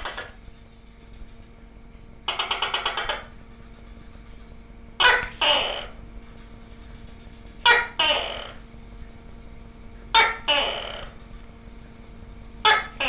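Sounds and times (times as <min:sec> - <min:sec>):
gecko loud short call: 0:07.7 - 0:08.6, 0:10.2 - 0:11.2.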